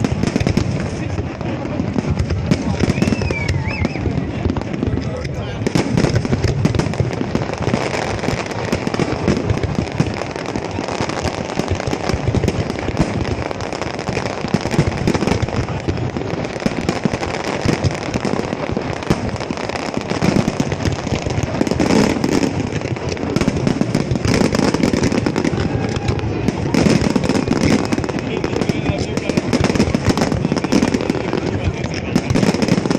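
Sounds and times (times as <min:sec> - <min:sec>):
fireworks bangs and crackles: 0:00.0 - 0:32.9.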